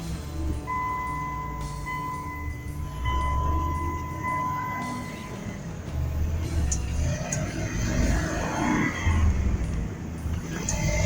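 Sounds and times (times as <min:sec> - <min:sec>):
truck engine rumbling: 0:00.0 - 0:11.0.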